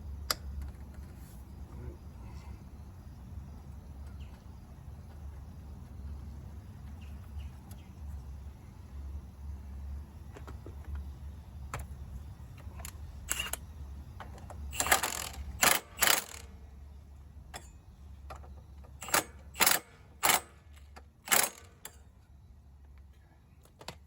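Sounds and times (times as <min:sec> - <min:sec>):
steady low hum: 0:00.0 - 0:24.0
metal parts and tools clattering: 0:12.8 - 0:13.6, 0:14.7 - 0:16.4, 0:19.0 - 0:22.0
sharp metal clanks: 0:14.7 - 0:16.4, 0:17.5 - 0:17.9, 0:19.0 - 0:20.6.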